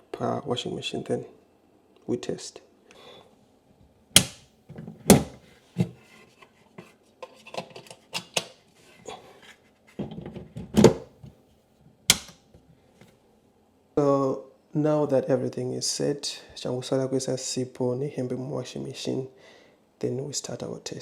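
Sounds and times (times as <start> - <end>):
plastic plug clicks and knocks: 4.2 - 4.4, 12.1 - 12.4.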